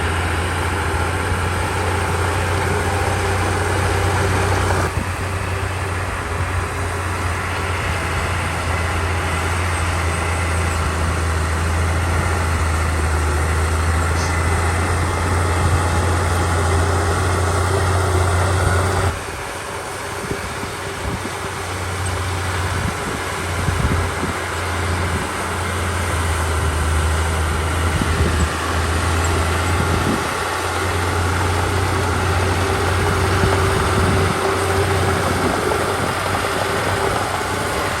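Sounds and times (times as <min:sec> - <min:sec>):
bulldozer diesel engine running: 0:00.0 - 0:38.0.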